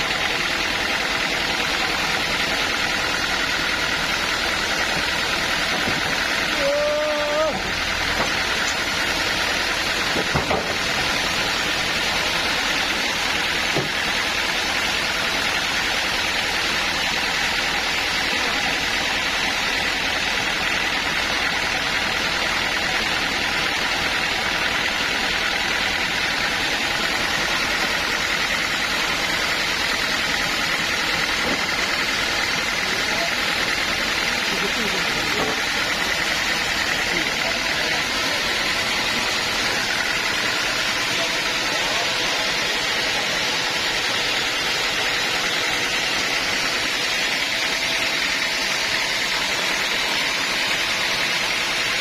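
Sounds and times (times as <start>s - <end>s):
sawmill machinery running: 0.0s - 52.0s.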